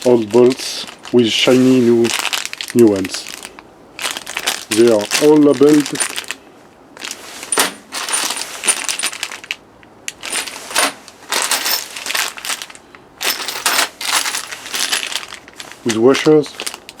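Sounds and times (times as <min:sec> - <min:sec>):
metal bolts and screws clinking: 0:07.0 - 0:17.0.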